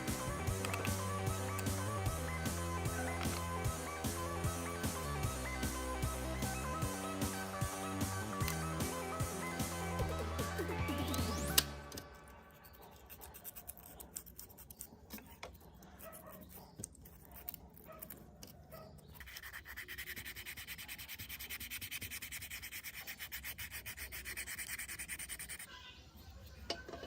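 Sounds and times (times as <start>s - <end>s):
music track: 0.0s - 12.3s
fast rubbing on hard object: 19.1s - 25.7s.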